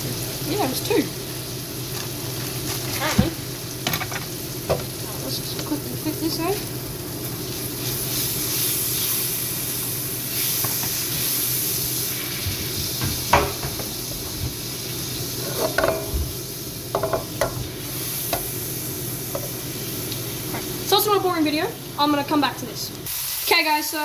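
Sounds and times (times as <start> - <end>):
steak sizzling in a pan: 0.0 - 24.0.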